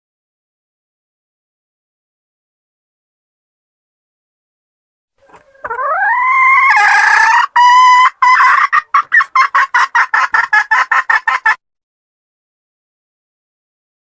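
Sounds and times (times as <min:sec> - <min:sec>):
hen cackling: 0:05.2 - 0:11.6.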